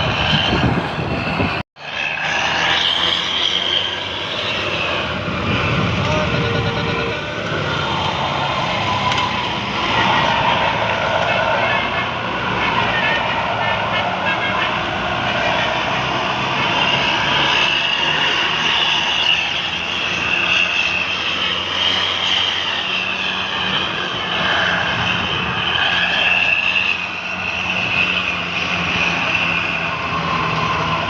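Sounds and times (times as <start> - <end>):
road and wind noise: 0.0 - 31.0
vehicle engines running: 0.0 - 31.0
high whine: 2.8 - 12.0.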